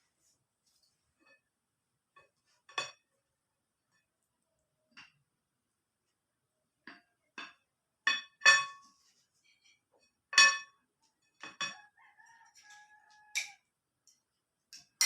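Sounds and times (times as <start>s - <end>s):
cutlery clinking against a plate: 6.9s - 11.9s, 12.5s - 13.6s.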